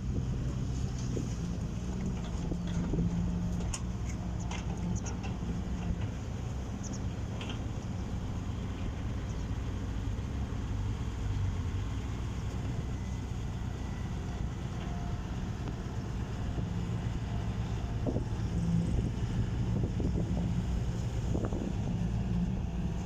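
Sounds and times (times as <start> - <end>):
heavy diesel engine rumbling: 0.0 - 23.0.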